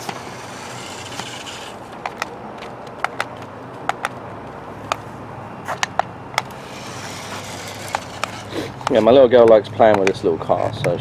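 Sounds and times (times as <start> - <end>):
toy car clacking on ground: 0.0 - 4.2, 5.7 - 11.0.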